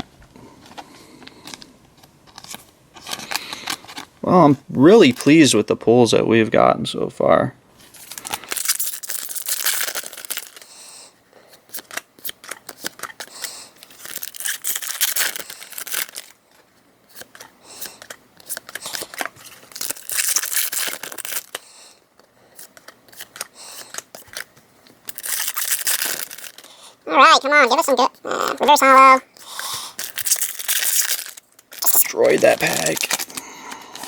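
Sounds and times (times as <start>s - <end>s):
foil packs tearing and crinkling: 7.9s - 10.9s, 11.6s - 16.4s, 17.1s - 26.9s, 28.8s - 34.0s
cards clicking and snapping: 11.5s - 16.3s, 17.1s - 21.6s, 22.2s - 26.7s.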